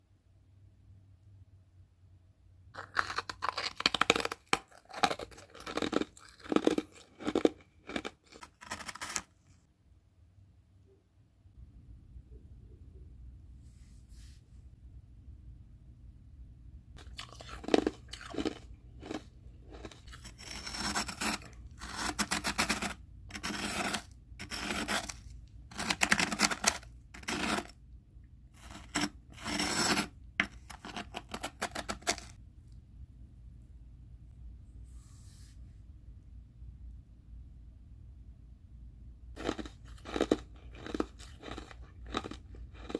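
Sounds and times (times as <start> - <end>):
ice being crunched and chewed: 2.8 - 9.4, 17.0 - 27.8, 28.6 - 32.4, 39.4 - 42.9.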